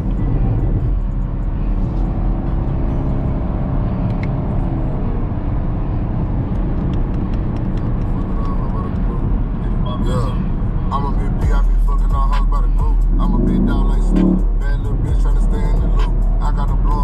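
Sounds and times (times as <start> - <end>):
music playing: 0.0 - 3.6, 9.9 - 17.0
car engine running: 0.0 - 17.0.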